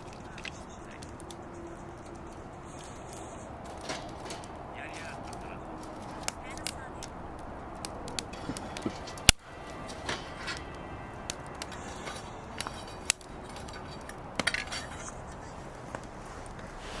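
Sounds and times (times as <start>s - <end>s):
firewood crackling and popping: 0.0s - 17.0s
low steady fire hiss: 0.0s - 17.0s.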